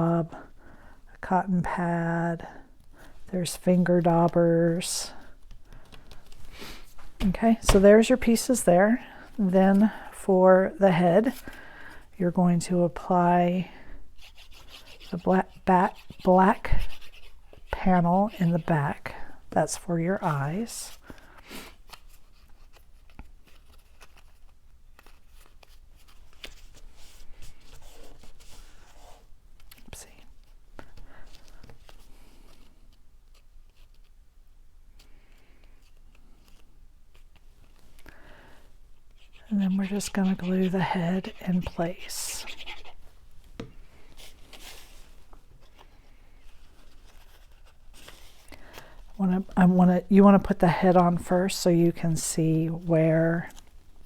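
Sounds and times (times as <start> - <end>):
paper rustling: 5.2 - 8.4, 39.0 - 49.5.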